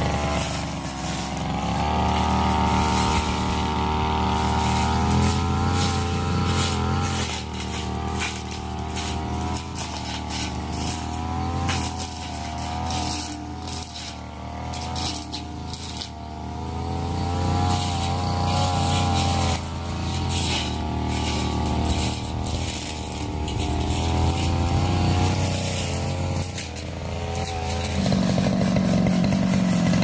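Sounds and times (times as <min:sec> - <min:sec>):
snaps and crackles of brush: 0:00.0 - 0:16.4, 0:17.2 - 0:30.0
brush cutter engine: 0:00.0 - 0:30.0.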